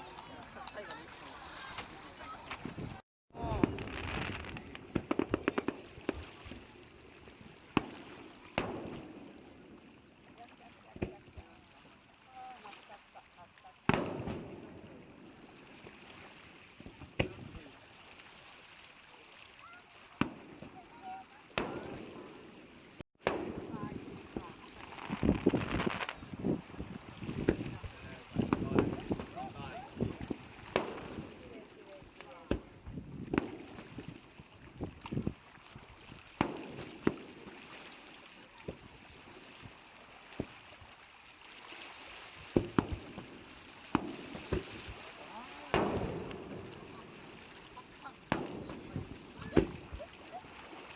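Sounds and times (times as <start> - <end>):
fireworks bangs: 0.0 - 6.9, 7.7 - 9.7, 13.9 - 15.0, 20.2 - 22.6, 23.2 - 34.2, 36.4 - 37.8, 42.5 - 50.3
firework burst rumble: 2.7 - 6.7, 23.2 - 31.4
firework bang with echo: 3.4 - 6.3, 45.7 - 46.8, 48.3 - 50.0.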